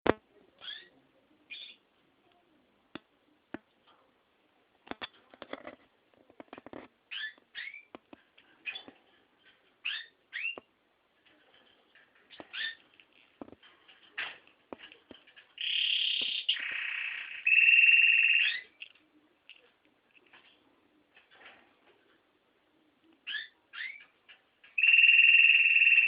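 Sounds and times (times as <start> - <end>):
canary singing trills: 0.6 - 1.8, 7.1 - 8.0, 9.8 - 10.7, 12.3 - 12.9, 15.6 - 18.8, 23.2 - 26.0.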